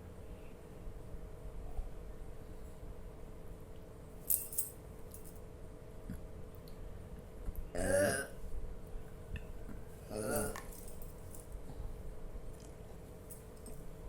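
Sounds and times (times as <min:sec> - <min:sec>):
loud burp: 0:07.7 - 0:08.4.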